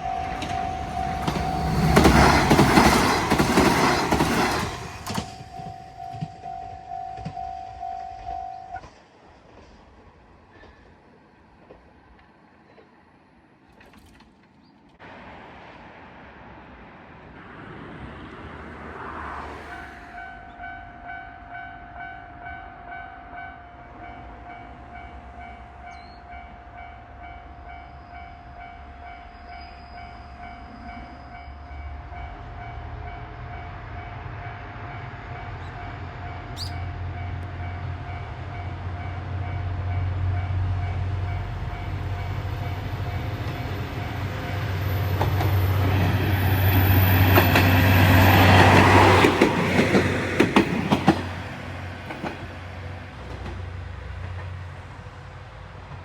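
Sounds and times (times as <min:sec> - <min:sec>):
level crossing bell ringing: 0:00.0 - 0:01.7, 0:05.3 - 0:08.8
wheels clattering on rails: 0:00.0 - 0:13.0, 0:40.9 - 0:54.7
diesel train engine rumble: 0:00.0 - 0:56.0.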